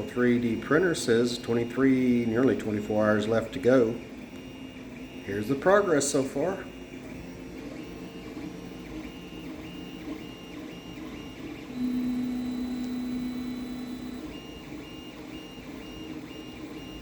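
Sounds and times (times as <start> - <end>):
printer low hum: 0.0 - 17.0
stepper motor whines: 6.4 - 17.0.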